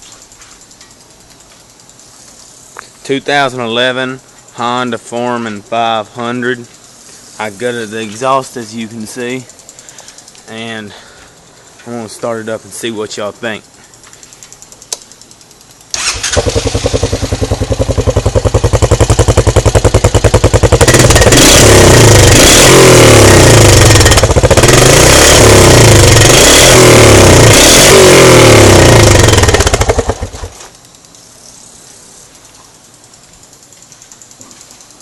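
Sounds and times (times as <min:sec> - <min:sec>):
atv engine idling and revving: 0:13.7 - 0:31.2, 0:32.4 - 0:35.0.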